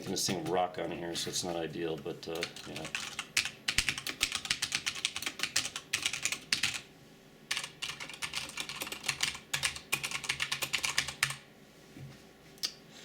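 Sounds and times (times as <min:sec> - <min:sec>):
mechanical keyboard typing: 0:02.4 - 0:06.8, 0:07.5 - 0:11.4.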